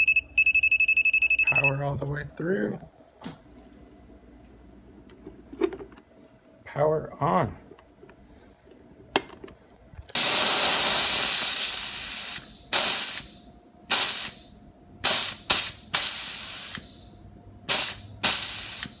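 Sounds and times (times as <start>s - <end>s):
steam hissing from nozzle: 10.2s - 13.3s, 13.9s - 14.4s, 15.0s - 16.9s, 17.7s - 19.0s.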